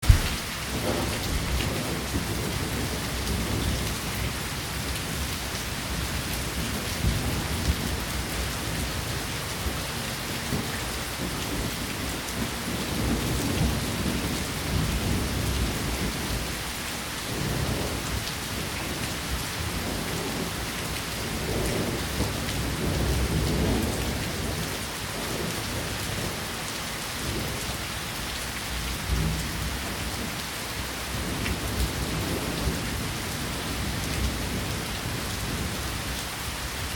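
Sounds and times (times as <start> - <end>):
sharp raindrop hits: 0.0 - 1.8
steady rain falling: 0.0 - 36.9.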